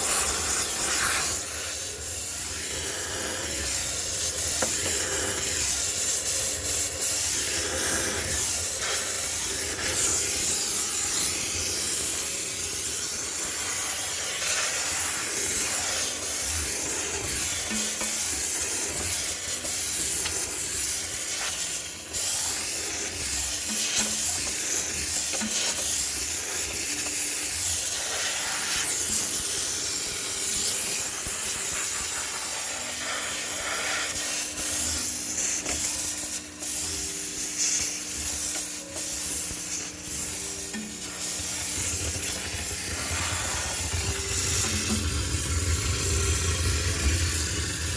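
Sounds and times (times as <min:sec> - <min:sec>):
steam cleaner hissing: 0:00.0 - 0:47.9.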